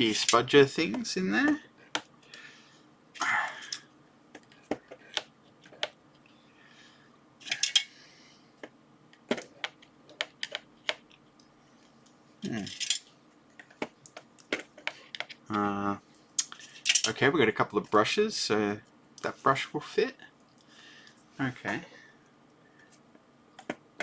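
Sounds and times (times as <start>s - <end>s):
tools clicking and clattering: 0.1s - 0.5s, 7.4s - 7.9s, 12.6s - 13.1s, 16.8s - 17.2s.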